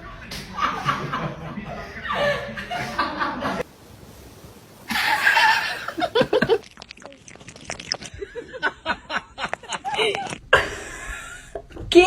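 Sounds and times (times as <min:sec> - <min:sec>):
people laughing: 0:00.3 - 0:03.7, 0:04.9 - 0:06.6, 0:08.2 - 0:11.6.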